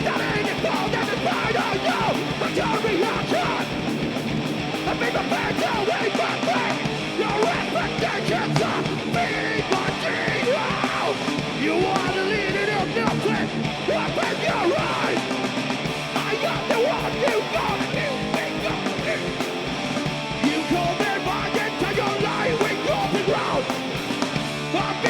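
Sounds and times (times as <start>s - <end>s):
shouted vocals: 0.0s - 3.9s, 4.8s - 15.4s, 16.1s - 19.6s, 20.4s - 24.0s, 24.6s - 25.0s
live punk band playing: 0.0s - 25.0s.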